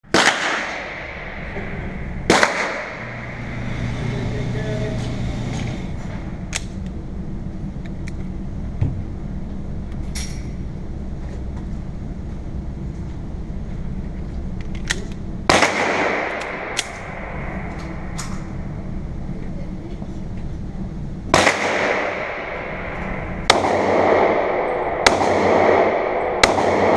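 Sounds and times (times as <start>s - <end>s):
pistol shot ringing: 0.1s - 1.2s, 2.3s - 3.1s, 21.3s - 26.9s
low background noise: 0.1s - 26.9s.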